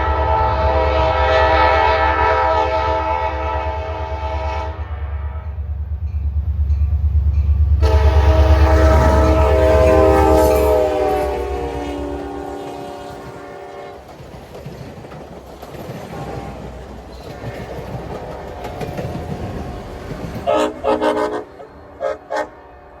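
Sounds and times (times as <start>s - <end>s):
train horn: 0.0s - 5.8s, 7.8s - 14.2s, 16.0s - 23.0s
train wheels clattering on rail joints: 8.9s - 21.8s.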